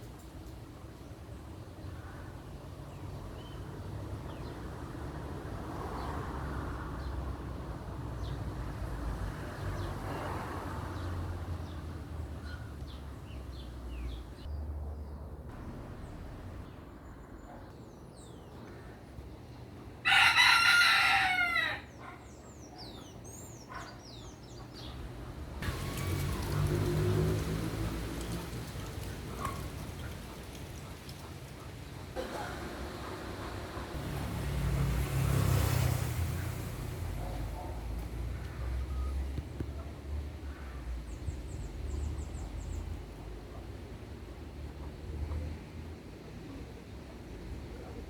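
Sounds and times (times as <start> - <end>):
small birds chirping: 11.0 - 19.8, 21.9 - 34.0
rooster crowing: 20.0 - 22.0.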